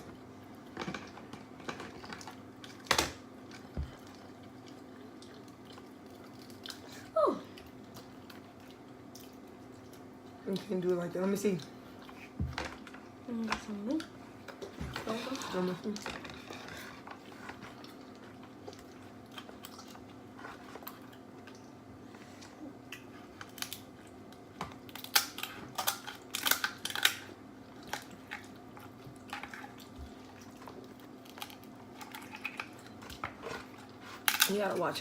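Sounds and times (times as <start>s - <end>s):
faint steady hum: 0.0s - 35.0s
crab legs cracking and crunching: 0.6s - 10.8s, 12.7s - 21.7s, 22.8s - 34.7s.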